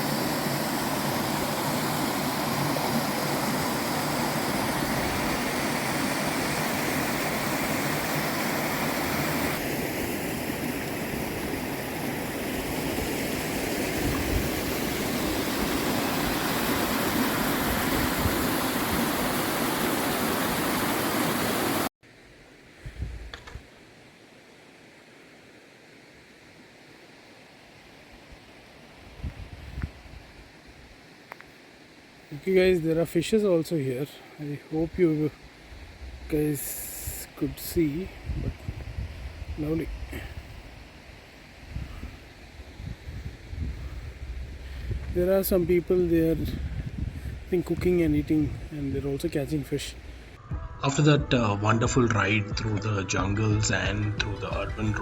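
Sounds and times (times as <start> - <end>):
waterfall rushing: 0.0 - 21.9.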